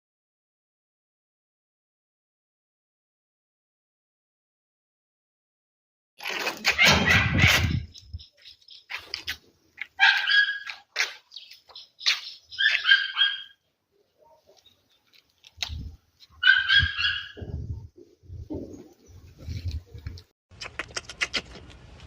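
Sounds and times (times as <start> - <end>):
dog yelping barks: 6.7 - 7.9, 10.0 - 11.1, 12.5 - 13.6, 16.4 - 17.4.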